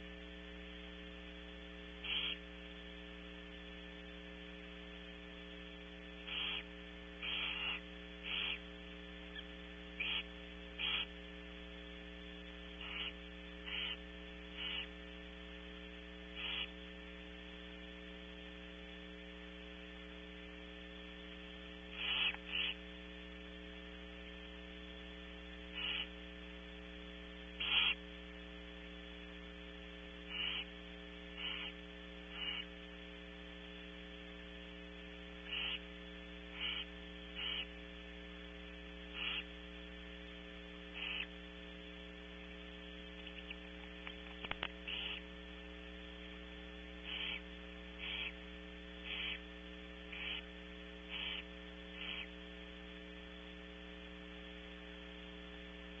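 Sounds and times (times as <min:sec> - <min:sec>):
electrical hum: 0:00.0 - 0:56.0
owl rasping hiss calls: 0:02.0 - 0:02.4, 0:06.2 - 0:08.7, 0:09.3 - 0:11.2, 0:12.7 - 0:15.0, 0:16.3 - 0:16.8, 0:21.9 - 0:22.8, 0:25.7 - 0:26.2, 0:27.6 - 0:28.0, 0:30.2 - 0:32.8, 0:35.4 - 0:37.8, 0:39.0 - 0:39.6, 0:40.8 - 0:41.4, 0:44.4 - 0:45.3, 0:47.0 - 0:52.4.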